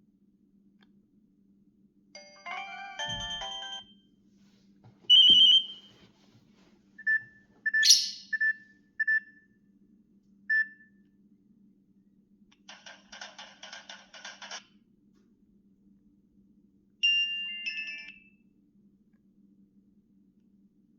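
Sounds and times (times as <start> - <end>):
phone electronic melody: 2.2 - 3.9.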